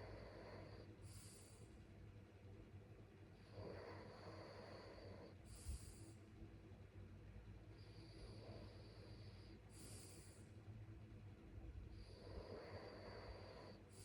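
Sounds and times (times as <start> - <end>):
person breathing in sleep: 0.0 - 1.8, 3.2 - 6.2, 7.7 - 10.6, 11.8 - 14.0.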